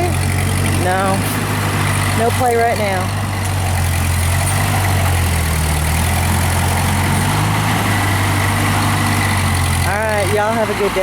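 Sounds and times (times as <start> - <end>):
tractor engine idling: 0.0 - 11.0.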